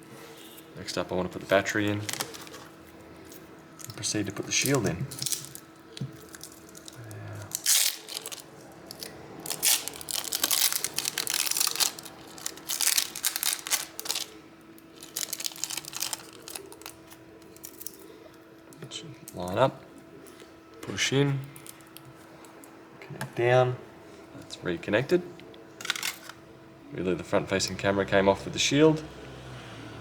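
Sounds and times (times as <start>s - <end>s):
crinkling and tearing handling sounds: 1.4s - 19.6s, 25.8s - 26.4s.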